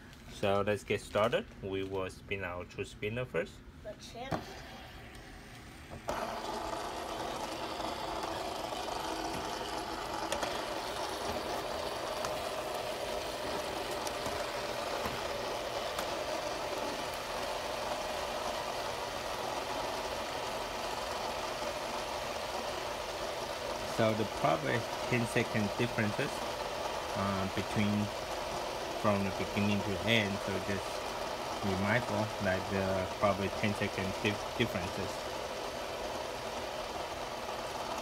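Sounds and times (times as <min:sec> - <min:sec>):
fidget spinner whirring: 0:04.0 - 0:38.0.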